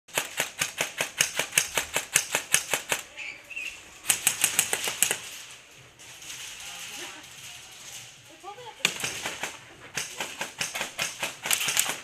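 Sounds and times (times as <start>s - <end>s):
airsoft gun rapid shots: 0.1s - 3.1s, 4.0s - 5.2s, 8.8s - 12.0s.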